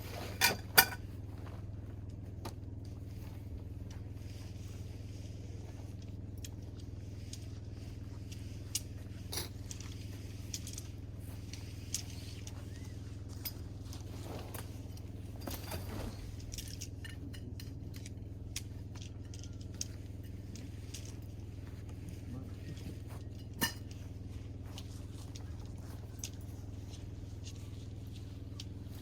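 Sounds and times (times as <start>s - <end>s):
steady low hum: 0.0s - 29.0s
small objects clicking and clinking: 8.2s - 13.7s, 16.3s - 21.9s.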